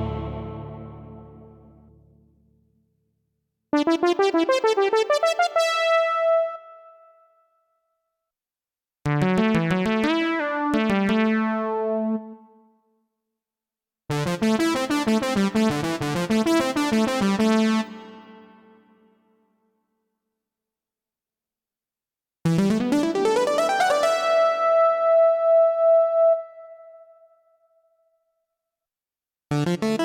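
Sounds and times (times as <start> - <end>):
keyboard playing piano phrases: 0.0 - 1.8.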